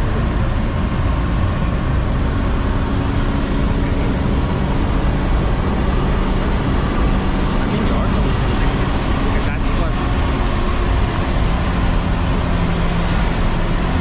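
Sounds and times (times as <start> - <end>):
tram rumble and road noise: 0.0 - 14.0.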